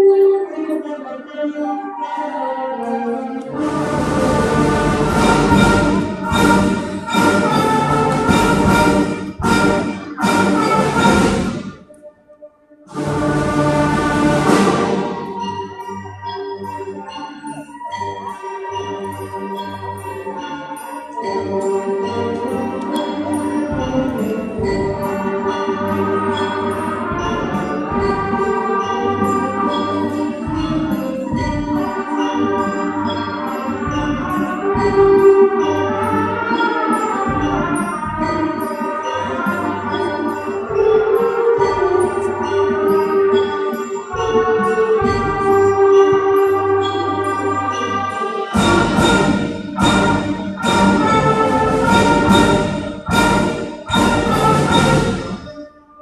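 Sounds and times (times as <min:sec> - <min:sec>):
school band playing: 0:00.0 - 0:12.0, 0:12.9 - 0:55.7
brass band playing accented chords: 0:03.5 - 0:11.8, 0:12.9 - 0:15.5, 0:44.5 - 0:55.5.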